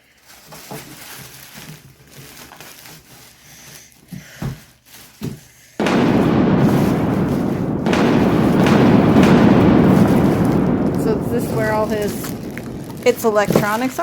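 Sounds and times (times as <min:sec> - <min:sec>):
plastic packaging crinkling: 0:00.0 - 0:04.0, 0:04.6 - 0:05.4, 0:09.8 - 0:14.0
loud rustling burst: 0:05.8 - 0:14.0.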